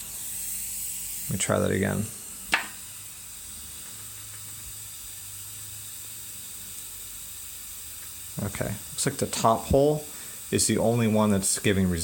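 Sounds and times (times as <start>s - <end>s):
background hiss: 0.0s - 12.0s
sharp click: 2.5s - 2.8s.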